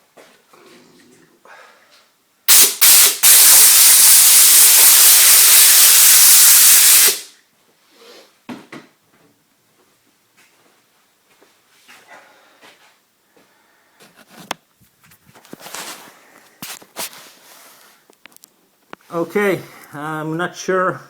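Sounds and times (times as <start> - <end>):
air blow gun hissing: 2.5 - 7.3.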